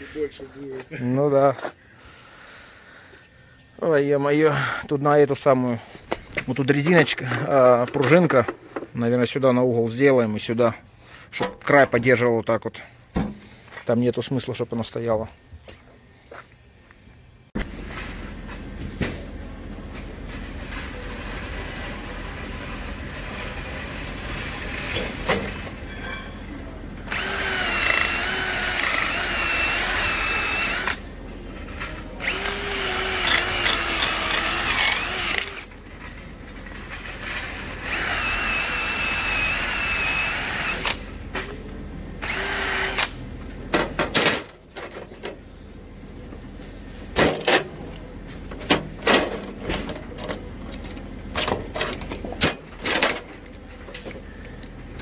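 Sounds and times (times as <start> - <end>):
power drill whining: 27.1 - 31.0, 32.2 - 35.7, 37.8 - 41.0, 42.2 - 43.1.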